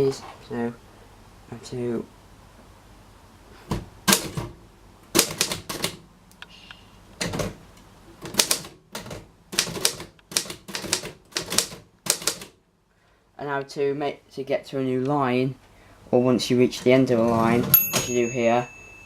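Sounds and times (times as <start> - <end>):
typewriter key clacks: 5.2 - 6.0, 8.3 - 12.5.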